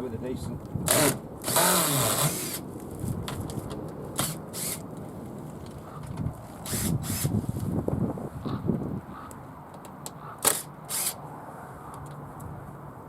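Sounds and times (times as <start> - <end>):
wind rumbling on microphone: 0.0 - 10.4.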